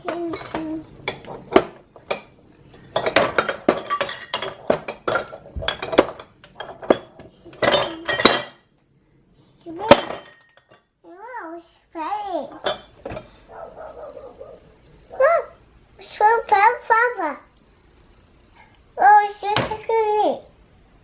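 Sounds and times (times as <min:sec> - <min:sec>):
kitchen items clattering: 0:00.0 - 0:08.8, 0:09.6 - 0:11.0, 0:12.0 - 0:14.6.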